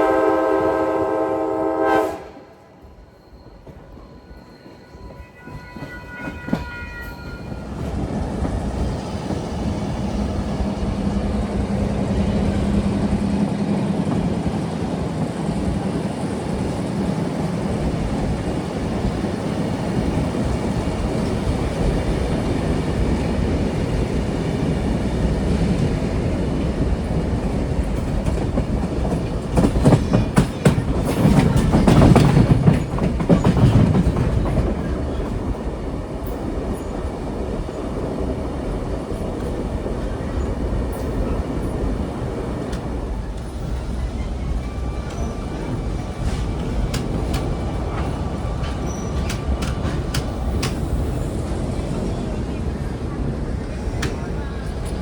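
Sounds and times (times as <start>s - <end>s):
train horn: 0.0s - 3.0s, 4.7s - 7.8s
train rumbling on rails: 0.0s - 55.0s
wheels clacking over rail joints: 25.2s - 37.6s, 38.7s - 51.7s.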